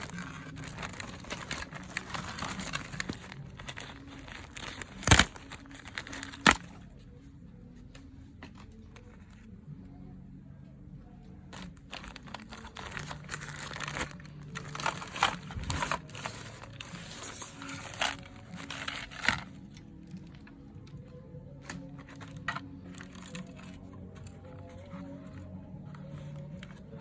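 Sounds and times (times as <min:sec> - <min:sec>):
packaging crinkling and tearing: 0:00.0 - 0:06.8, 0:11.6 - 0:20.5, 0:21.6 - 0:24.9.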